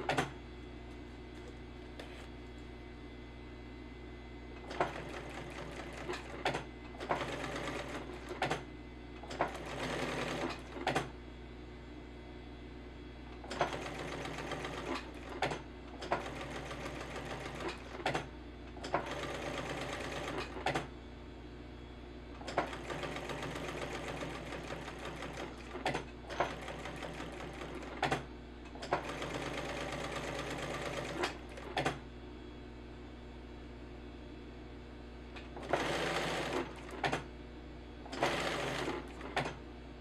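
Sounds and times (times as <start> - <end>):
sewing machine clicks: 4.6 - 8.6, 13.4 - 20.9, 22.4 - 32.0, 38.1 - 39.6
sewing machine stitching: 4.6 - 8.6, 9.2 - 11.1, 13.4 - 20.9, 22.4 - 28.2, 28.8 - 32.0, 35.5 - 37.3, 38.1 - 39.6.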